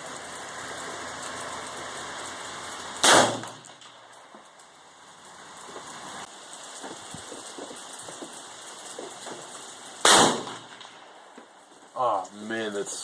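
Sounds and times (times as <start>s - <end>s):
rain pattering: 0.0s - 13.0s
rifle shot: 3.0s - 4.0s, 10.0s - 11.0s.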